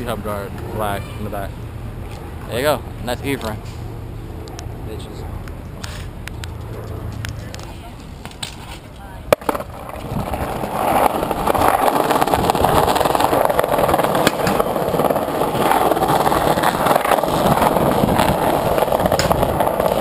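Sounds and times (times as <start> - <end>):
bike tyres rumbling on pavement: 5.6 - 20.0.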